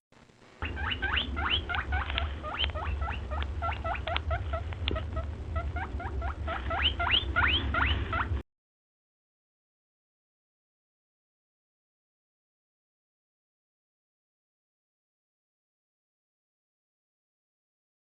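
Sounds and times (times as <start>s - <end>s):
steady low hum: 0.2s - 8.4s
small animal squeaking: 0.6s - 8.4s.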